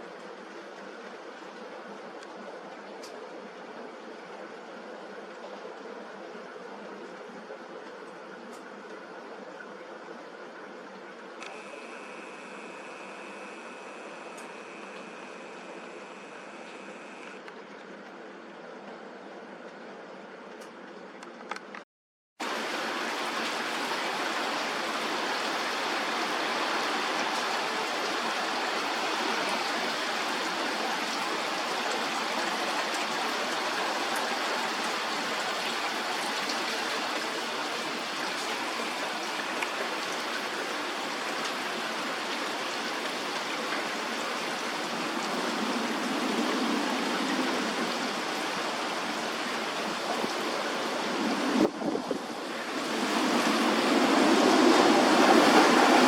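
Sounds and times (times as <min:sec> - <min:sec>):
wind: 0:00.0 - 0:56.0
heavy rain downpour: 0:11.4 - 0:17.5, 0:22.4 - 0:56.0.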